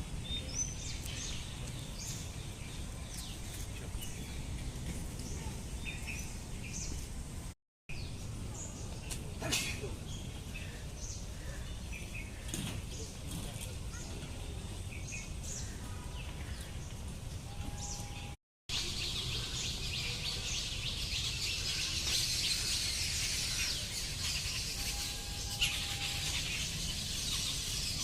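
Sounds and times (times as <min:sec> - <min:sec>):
birds chirping: 0:07.9 - 0:28.0.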